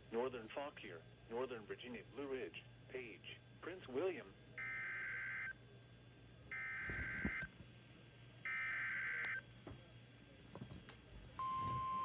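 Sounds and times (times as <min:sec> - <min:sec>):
steady warning alarm tone: 0:04.6 - 0:05.5, 0:06.5 - 0:07.5, 0:08.5 - 0:09.4.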